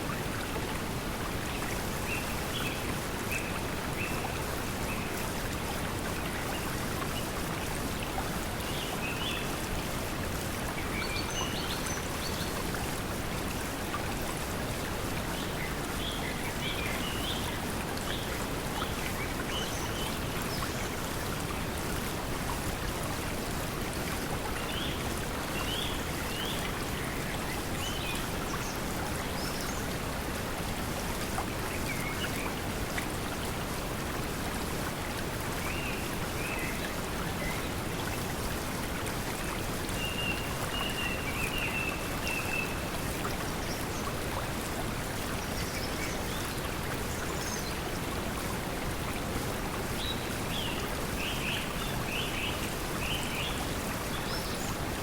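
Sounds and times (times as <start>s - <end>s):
flowing water: 0.0s - 55.0s.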